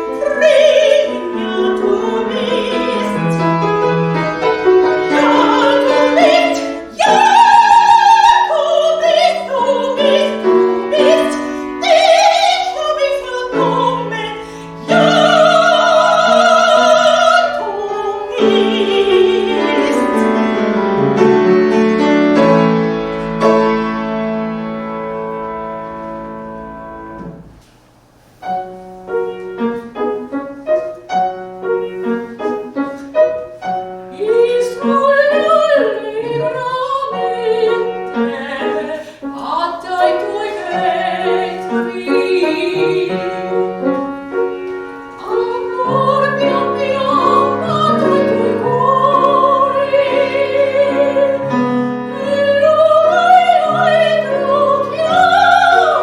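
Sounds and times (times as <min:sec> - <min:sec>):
soprano singing with vibrato: 0:00.0 - 0:21.0, 0:33.8 - 0:56.0
piano accompaniment: 0:00.0 - 0:56.0.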